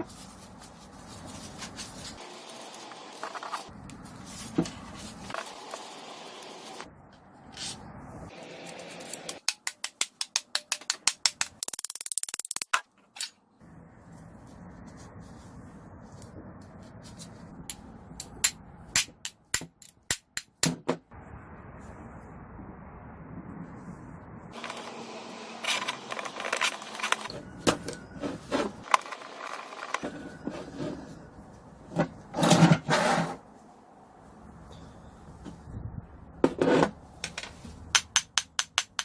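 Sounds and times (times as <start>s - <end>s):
small hard parts clicking: 9.1s - 13.4s.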